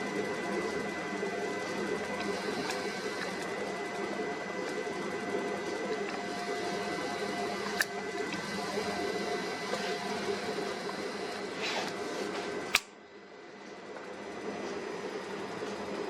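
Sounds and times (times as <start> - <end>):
constant whining tones: 0.0 - 16.0
machinery and ventilation hum: 0.0 - 16.0
sharp click: 12.7 - 13.0.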